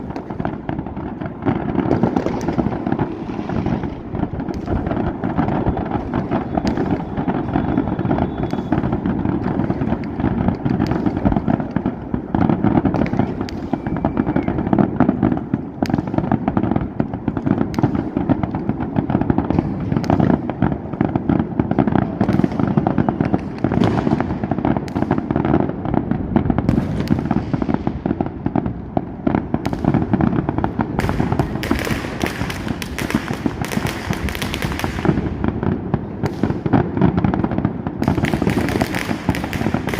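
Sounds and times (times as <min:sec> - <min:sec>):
fireworks bangs and crackle: 0:00.0 - 0:39.9.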